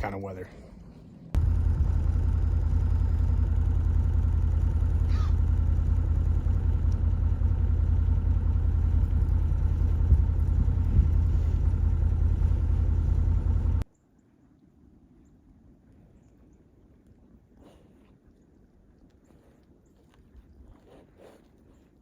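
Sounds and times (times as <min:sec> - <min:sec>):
vehicle engine rumbling: 0:00.8 - 0:13.9.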